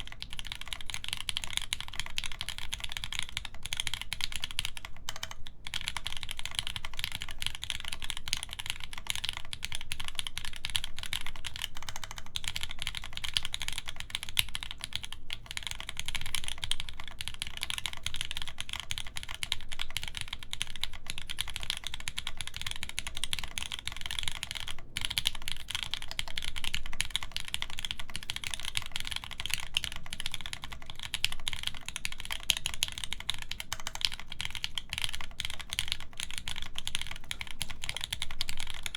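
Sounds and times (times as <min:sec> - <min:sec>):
fast typing on mechanical keyboard: 0:00.0 - 0:38.9.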